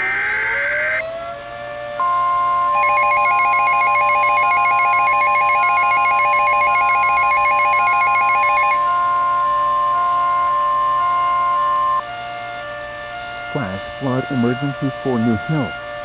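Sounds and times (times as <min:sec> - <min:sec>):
fast-trilling electronic alarm: 0:02.8 - 0:08.8
steady warning alarm tone: 0:02.8 - 0:08.8.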